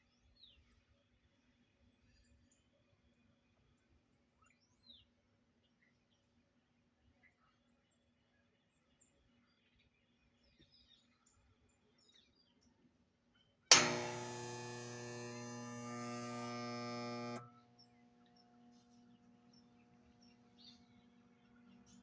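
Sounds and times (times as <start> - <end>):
air conditioner switch click: 13.7 - 17.5
motor electrical buzz: 13.7 - 20.7
faint hum: 13.7 - 22.0.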